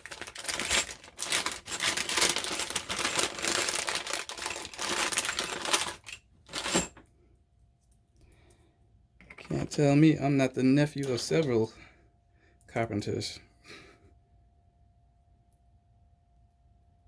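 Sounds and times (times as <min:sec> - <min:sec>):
tools clattering on metal case: 0:00.1 - 0:07.0.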